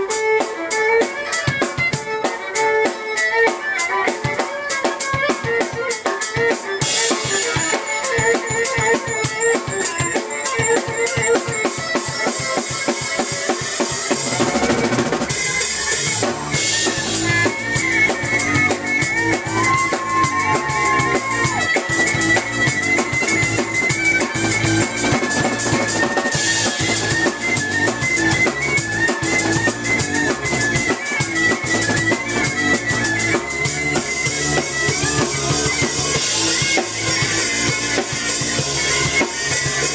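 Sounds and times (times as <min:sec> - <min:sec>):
fast drumming: 0:00.0 - 0:39.9
high melody line: 0:00.0 - 0:39.9.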